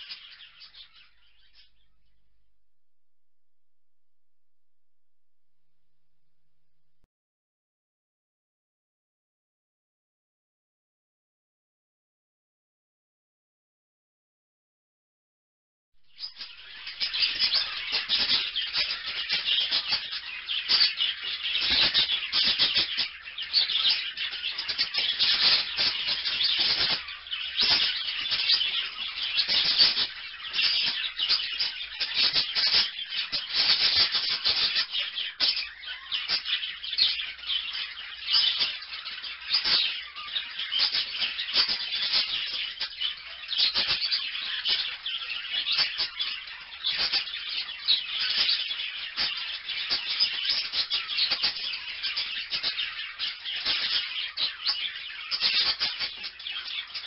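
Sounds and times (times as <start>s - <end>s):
parrots chattering: 16.2s - 57.0s.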